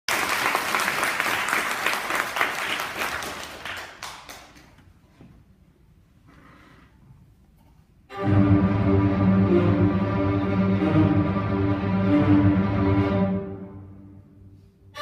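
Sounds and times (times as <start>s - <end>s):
audience applauding: 0.1s - 4.7s.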